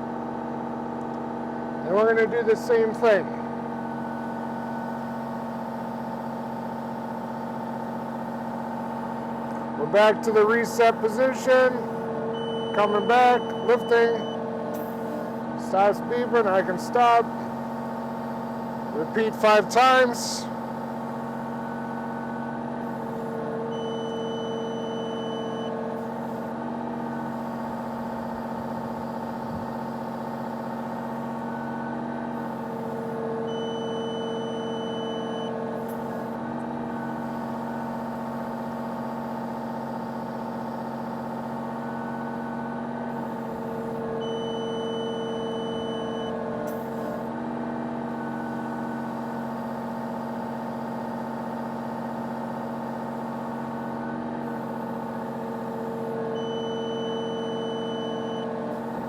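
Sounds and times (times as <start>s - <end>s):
excavator diesel engine running: 0.0s - 59.0s
hydraulic whine: 0.0s - 59.0s
high steady beep: 10.6s - 14.4s, 19.0s - 20.4s, 23.7s - 25.8s, 33.5s - 35.6s, 44.2s - 46.4s, 56.4s - 58.5s.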